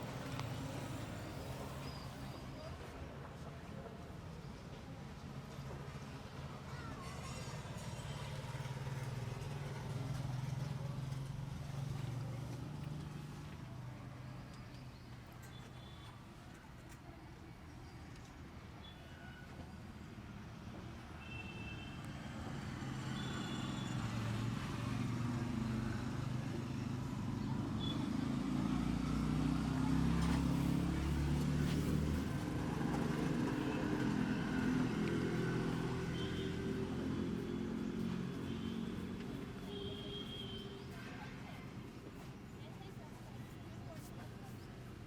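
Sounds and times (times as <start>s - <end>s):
motor vehicle passing: 22.2s - 41.8s.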